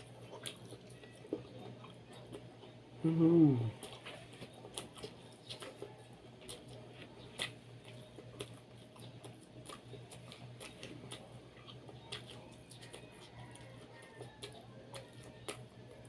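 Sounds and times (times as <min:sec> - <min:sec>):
low steady hum: 0:00.0 - 0:16.0
person chewing: 0:00.0 - 0:16.0.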